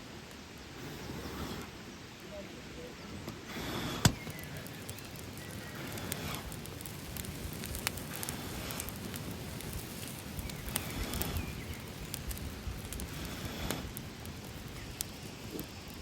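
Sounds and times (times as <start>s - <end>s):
campfire crackling and popping: 0.0s - 16.0s.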